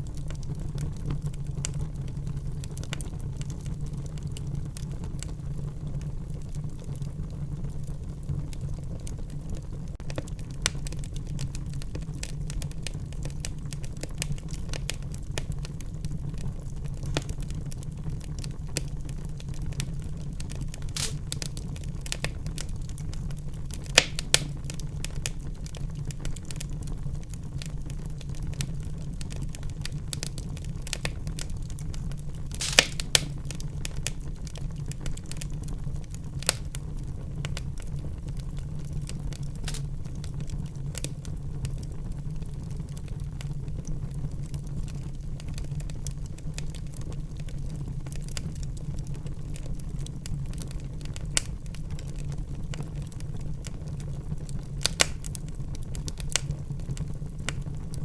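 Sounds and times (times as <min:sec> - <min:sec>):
wood fire crackling: 0:00.0 - 0:58.0
fire pops: 0:10.0 - 0:17.6, 0:18.2 - 0:26.9, 0:27.6 - 0:37.8, 0:38.8 - 0:41.4, 0:50.6 - 0:58.0.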